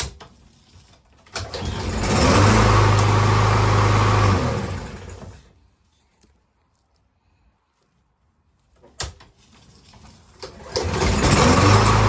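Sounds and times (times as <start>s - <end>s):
lawn mower engine starting: 0.0s - 5.5s, 9.4s - 12.0s.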